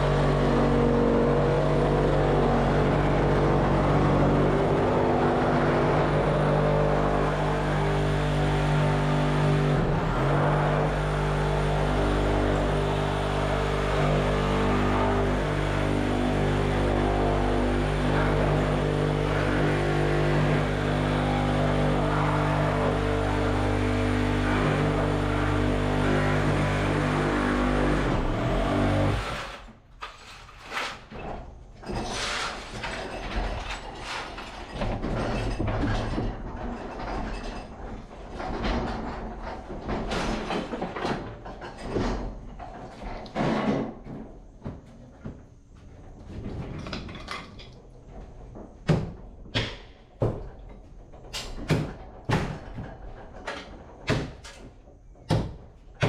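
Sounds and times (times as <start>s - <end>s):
renovation knocks and bangs: 0.0s - 56.0s
sharp knocks: 48.8s - 50.5s, 51.3s - 52.9s, 54.0s - 54.6s, 55.2s - 56.0s.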